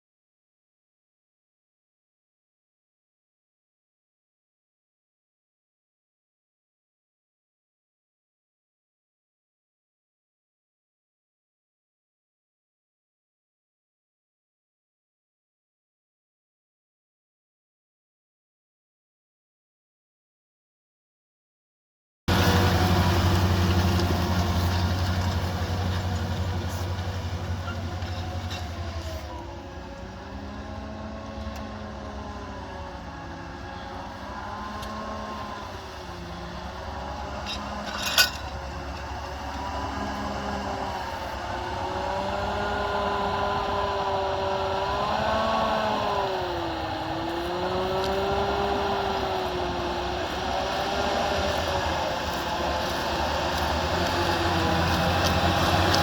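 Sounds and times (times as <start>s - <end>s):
tractor diesel engine drone: 22.3s - 56.0s.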